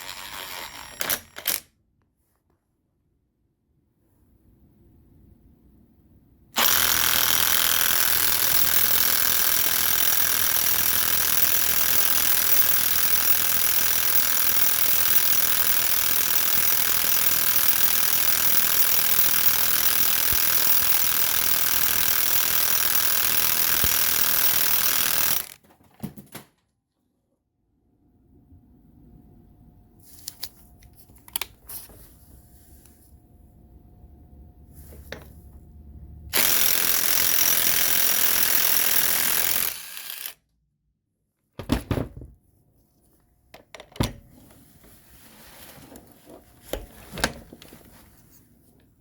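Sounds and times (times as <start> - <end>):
impact wrench hammering: 6.6 - 25.6, 36.4 - 39.8.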